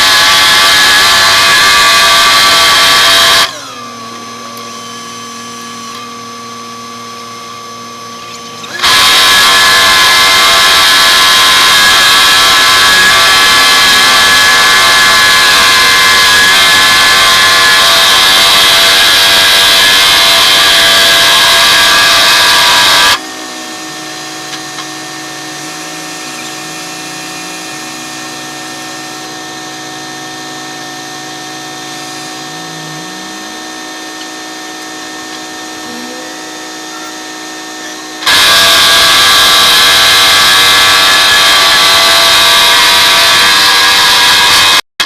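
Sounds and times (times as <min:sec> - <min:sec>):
loud hissing machine noise: 0:00.0 - 0:05.9, 0:08.2 - 0:44.8
machinery engine drone: 0:11.9 - 0:40.9.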